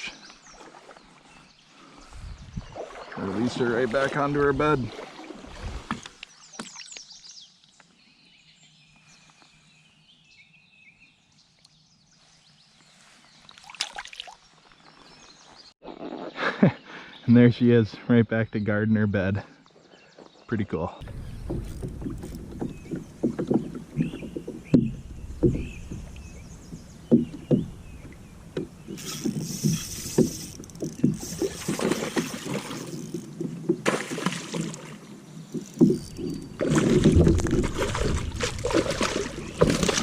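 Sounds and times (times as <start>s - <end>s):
water sloshing and splashing: 0.0s - 1.4s, 2.5s - 7.0s, 13.4s - 14.4s, 21.0s - 40.0s
knocks on a kayak hull: 21.0s - 28.9s.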